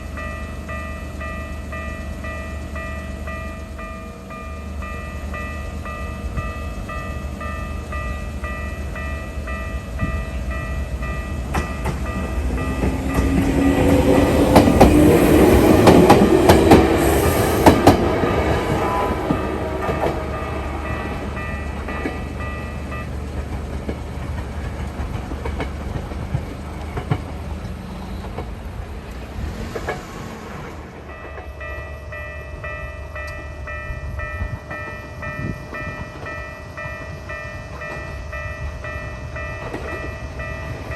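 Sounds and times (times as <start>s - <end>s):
level crossing warning tone: 0.0s - 23.2s
electric train passing: 0.0s - 40.9s
wheels clacking over rail joints: 10.5s - 31.7s.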